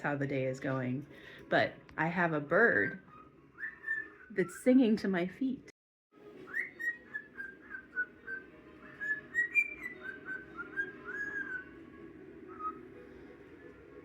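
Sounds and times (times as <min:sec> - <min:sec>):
bird whistling: 0:02.8 - 0:04.9, 0:06.4 - 0:13.0.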